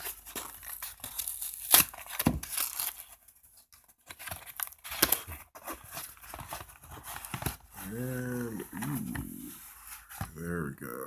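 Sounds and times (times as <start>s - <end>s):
packaging being torn open: 0.4s - 3.1s.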